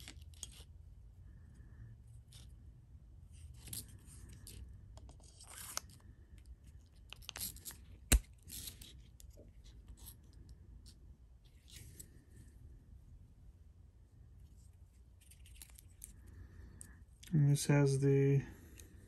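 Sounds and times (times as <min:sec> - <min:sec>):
knife sheath rustling and scraping: 0:05.2 - 0:06.0, 0:10.8 - 0:12.5.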